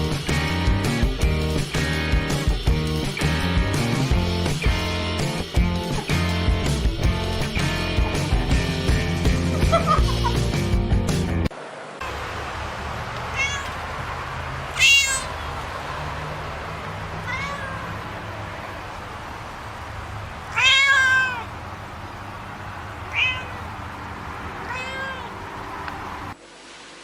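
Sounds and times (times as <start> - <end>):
cat meowing: 13.3 - 13.8, 14.7 - 15.4, 17.2 - 18.1, 20.5 - 21.5, 23.1 - 23.6, 24.6 - 25.4.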